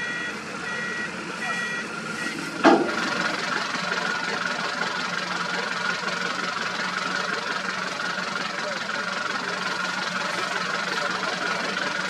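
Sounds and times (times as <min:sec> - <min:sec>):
reversing alarm beep: 0:00.0 - 0:02.5
diesel machinery running: 0:00.0 - 0:12.0.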